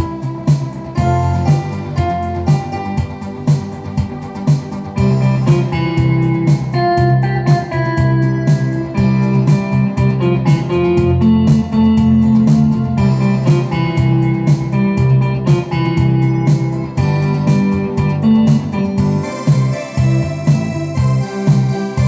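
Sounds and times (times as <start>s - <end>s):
electronic keyboard tune: 0.0s - 22.0s
steady beat accompaniment: 0.0s - 22.0s.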